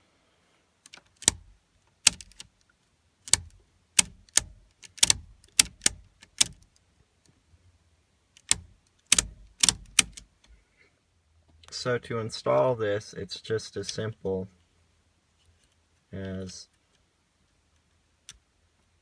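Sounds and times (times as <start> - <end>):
small metal parts clicking: 0.8 - 1.4.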